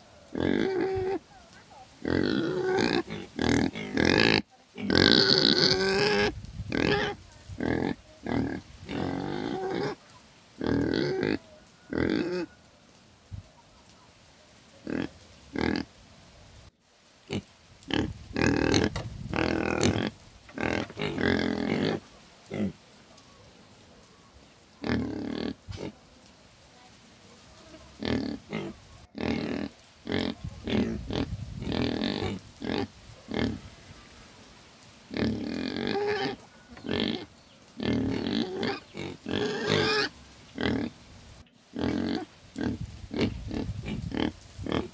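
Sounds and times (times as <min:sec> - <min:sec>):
pig grunting: 0:00.3 - 0:01.2, 0:02.0 - 0:10.0, 0:17.3 - 0:22.8, 0:24.8 - 0:26.0, 0:27.9 - 0:33.7, 0:35.1 - 0:41.0, 0:41.8 - 0:44.9.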